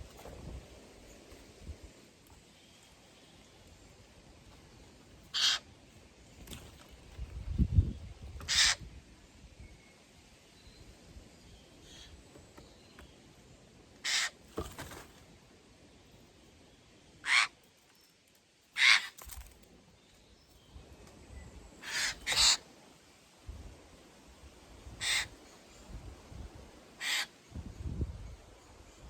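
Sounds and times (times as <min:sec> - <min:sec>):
jays giving raspy screech calls: 0:05.3 - 0:05.7, 0:08.5 - 0:08.8, 0:14.0 - 0:14.4, 0:17.2 - 0:17.6, 0:18.8 - 0:19.2, 0:21.8 - 0:22.6, 0:25.0 - 0:25.4, 0:27.0 - 0:27.3.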